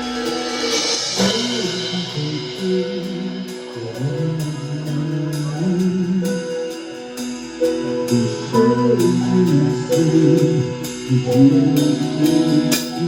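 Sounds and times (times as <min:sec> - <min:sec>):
bass line: 0:00.0 - 0:13.0
cymbal crash: 0:00.0 - 0:13.0
drum kit: 0:00.0 - 0:13.0
guitar: 0:00.0 - 0:13.0.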